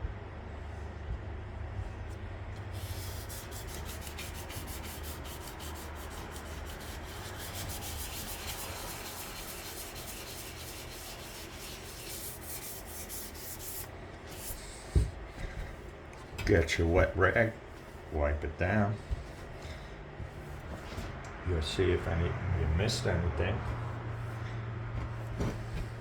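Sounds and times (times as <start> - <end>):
sandpaper rubbing back and forth: 2.7 - 15.8.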